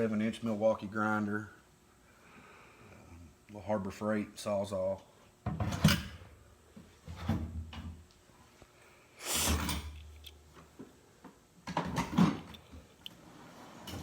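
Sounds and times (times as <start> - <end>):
steel drawers sliding and clunking: 13.3 - 14.0.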